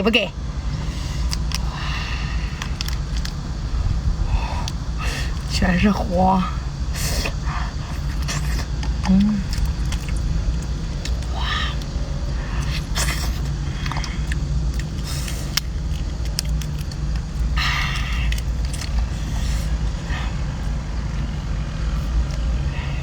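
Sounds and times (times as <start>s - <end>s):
low rumble: 0.0s - 23.0s
prawns crackling being peeled: 1.1s - 3.8s, 7.3s - 20.1s.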